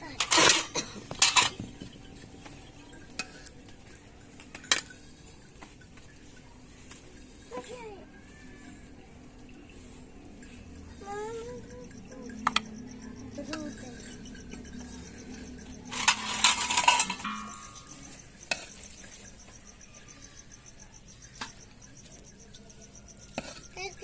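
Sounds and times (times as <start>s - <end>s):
loud clattering metallic scrape: 0.0s - 1.7s, 13.3s - 19.4s
metal utensils knocking pot: 0.0s - 6.2s, 11.6s - 24.0s.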